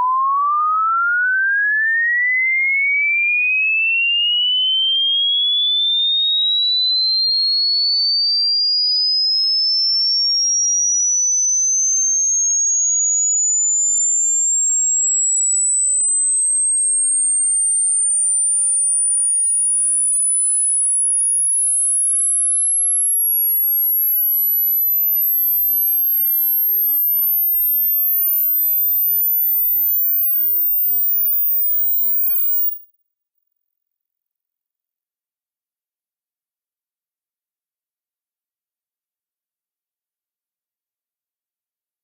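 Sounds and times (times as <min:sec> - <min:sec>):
sine tone sweeping upward: 0:09.7 - 0:32.9.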